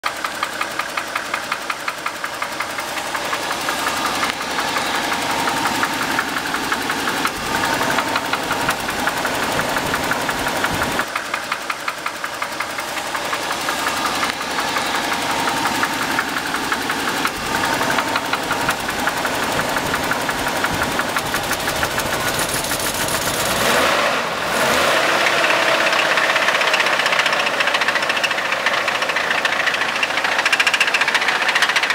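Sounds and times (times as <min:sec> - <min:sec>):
engine running: 0:00.0 - 0:31.9
fast regular ticking knock: 0:00.1 - 0:23.4.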